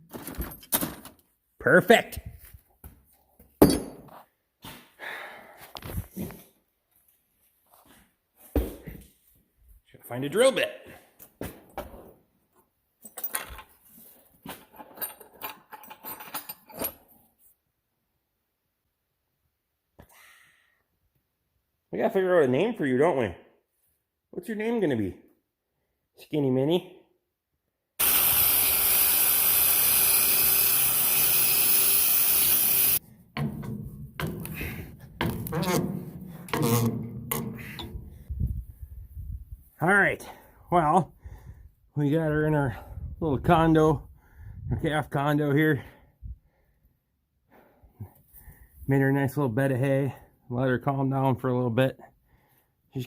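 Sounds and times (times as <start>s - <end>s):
power drill boring into wood: 28.0s - 33.0s.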